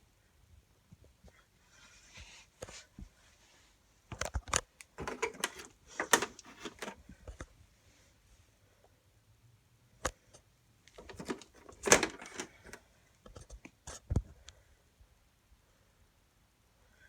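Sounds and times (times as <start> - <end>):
sharp clicks and knocks: 4.2 - 7.0, 11.0 - 12.8.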